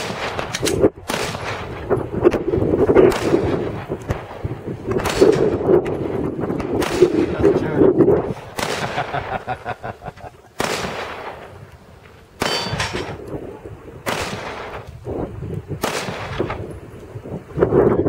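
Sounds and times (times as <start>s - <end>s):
pistol shots: 0.0s - 7.6s, 8.4s - 9.4s, 10.5s - 11.6s, 12.4s - 13.3s, 14.0s - 15.0s, 15.8s - 16.7s
metallic ring: 12.4s - 13.2s.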